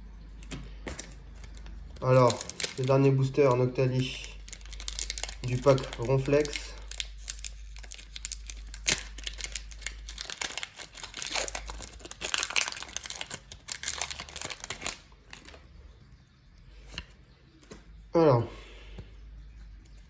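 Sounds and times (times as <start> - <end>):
foil wrapper crinkling: 0.4 - 15.7.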